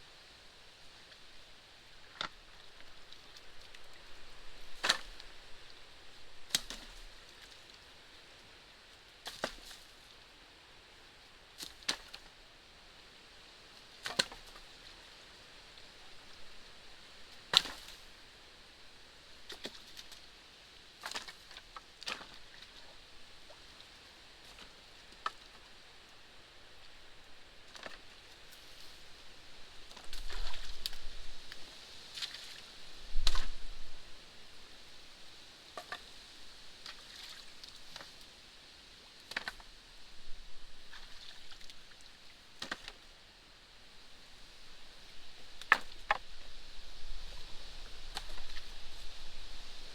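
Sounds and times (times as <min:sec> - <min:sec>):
sticks cracking and knocking: 0:04.8 - 0:05.3, 0:33.2 - 0:33.6, 0:35.8 - 0:36.1, 0:39.2 - 0:39.7, 0:42.6 - 0:43.0, 0:45.6 - 0:46.3.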